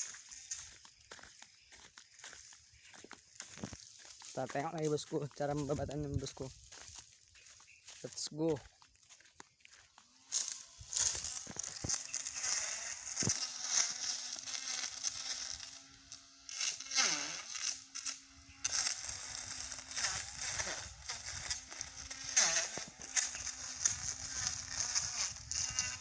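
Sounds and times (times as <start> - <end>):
crackling hiss of cut grass: 0.0 - 26.0
electric brush cutter humming: 9.7 - 26.0.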